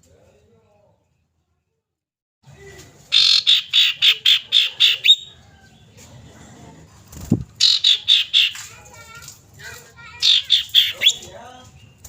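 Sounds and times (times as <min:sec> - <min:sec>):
bird calling harsh high notes: 0:03.1 - 0:05.3, 0:07.6 - 0:08.6, 0:10.1 - 0:11.3.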